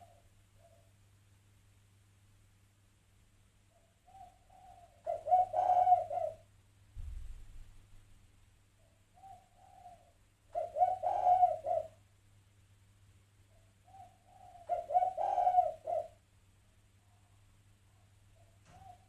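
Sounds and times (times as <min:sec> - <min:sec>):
dove cooing: 0:00.0 - 0:00.9, 0:03.7 - 0:06.5, 0:08.8 - 0:12.0, 0:13.5 - 0:16.2, 0:17.9 - 0:19.0.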